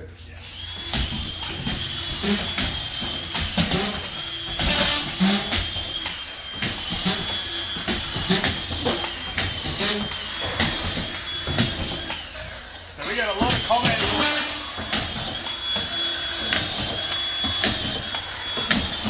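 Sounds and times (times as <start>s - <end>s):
knocks and clatter: 0.8s - 12.4s.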